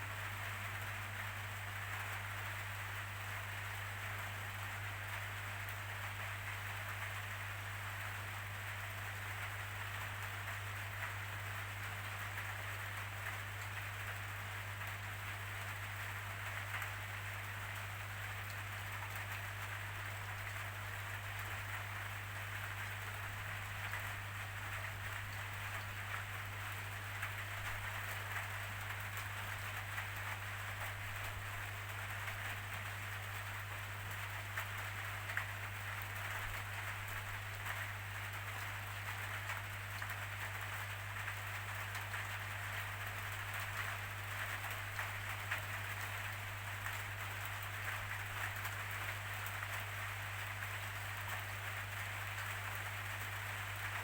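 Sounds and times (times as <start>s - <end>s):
steady rain: 0.0s - 54.0s
raindrop ticks: 27.2s - 49.9s.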